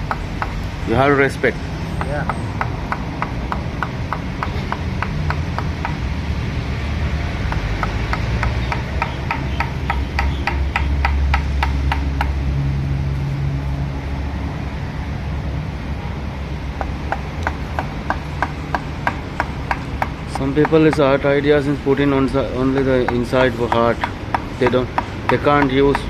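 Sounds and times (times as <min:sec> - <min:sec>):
rapid sharp tapping: 0:00.0 - 0:00.7, 0:02.0 - 0:06.0, 0:07.5 - 0:12.4, 0:16.8 - 0:21.4, 0:22.2 - 0:26.0.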